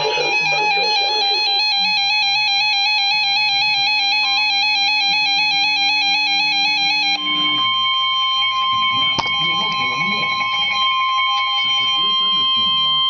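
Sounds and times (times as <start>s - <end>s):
steady electronic alert tone: 0.0s - 1.8s.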